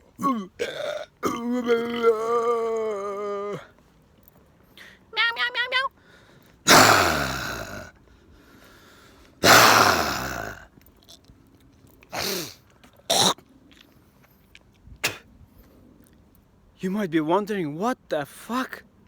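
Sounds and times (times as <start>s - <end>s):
man imitating dragon roars: 1.3s - 3.7s, 6.7s - 7.9s, 9.4s - 10.6s.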